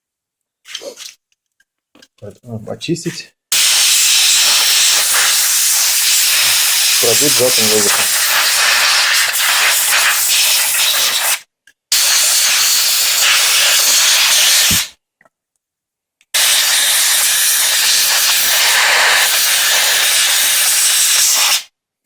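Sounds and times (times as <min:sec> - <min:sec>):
compressed air hissing: 0:03.5 - 0:15.0, 0:16.4 - 0:21.7.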